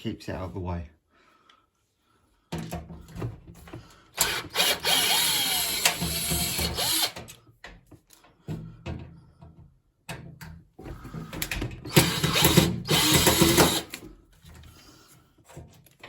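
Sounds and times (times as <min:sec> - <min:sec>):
screwdriver ratcheting clicks: 0:04.2 - 0:07.4, 0:11.9 - 0:14.0.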